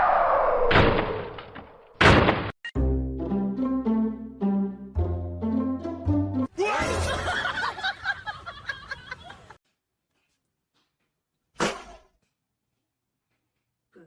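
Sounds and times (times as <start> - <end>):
people laughing together: 6.8 - 9.6.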